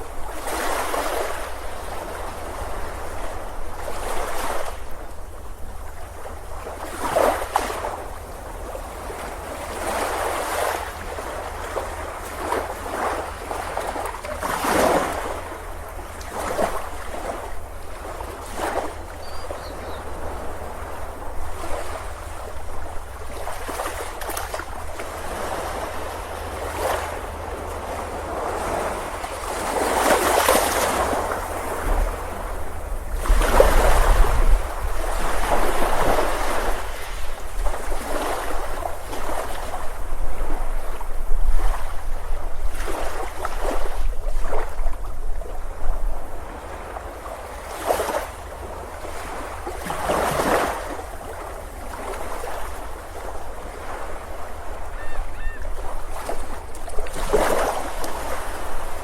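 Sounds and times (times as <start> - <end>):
ocean waves breaking on beach: 0.0 - 59.0.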